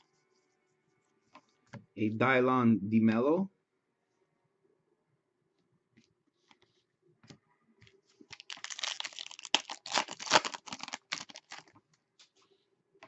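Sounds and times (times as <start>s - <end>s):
card packaging crinkling and clicking: 8.3s - 11.8s.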